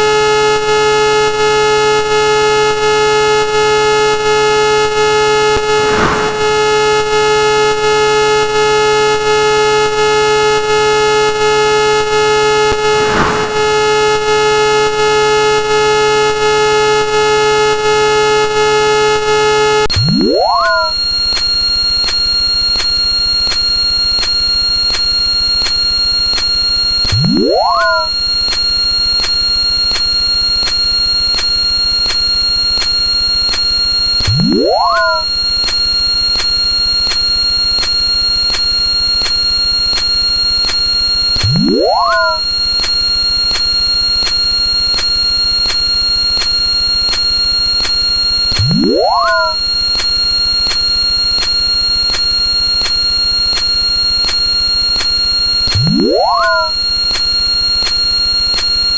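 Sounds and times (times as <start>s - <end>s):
harsh electronic drone: 4.7s - 8.5s, 12.2s - 15.2s
electronic upward pitch sweep: 5.4s - 7.2s, 12.6s - 14.4s, 34.3s - 35.4s, 41.4s - 42.6s, 48.6s - 49.7s, 55.7s - 56.8s
rising electronic swoop: 5.6s - 7.1s, 12.8s - 14.4s
regular electronic ticks: 19.9s - 58.9s.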